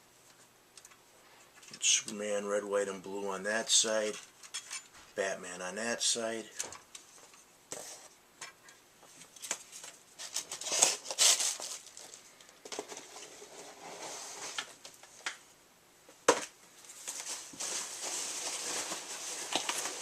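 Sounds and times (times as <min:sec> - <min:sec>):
card packaging rustling: 0:09.3 - 0:14.8, 0:16.8 - 0:20.0.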